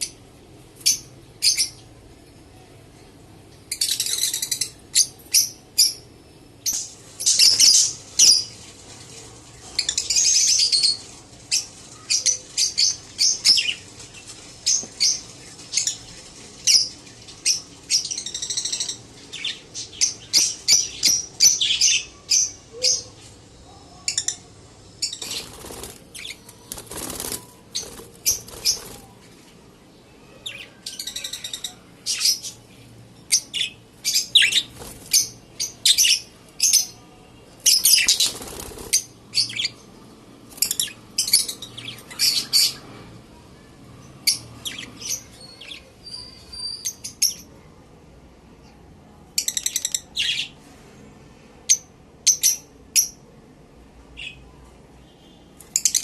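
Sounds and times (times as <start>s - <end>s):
lovebirds chirping: 0.0s - 42.9s, 43.6s - 47.5s, 55.1s - 56.0s
rustling: 25.2s - 29.6s.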